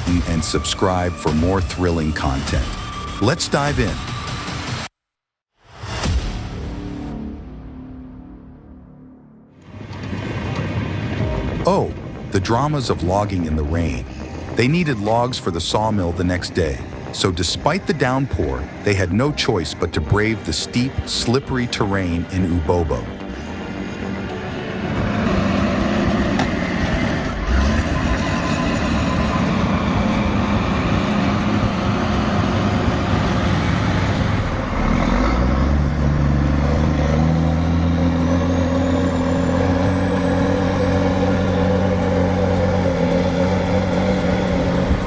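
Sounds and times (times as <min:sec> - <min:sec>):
heavy diesel engine under load: 0:09.6 - 0:45.0.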